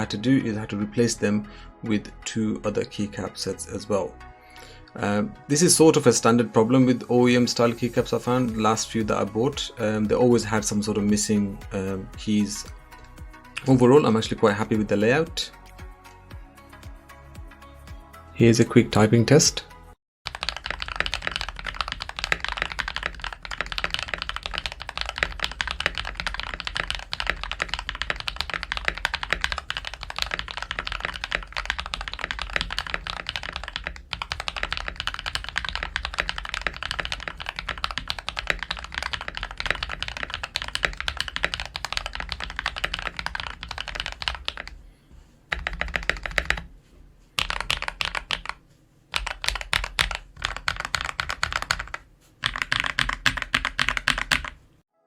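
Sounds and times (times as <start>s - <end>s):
fast mechanical keyboard typing: 20.3s - 44.8s, 45.5s - 46.7s, 47.4s - 54.6s.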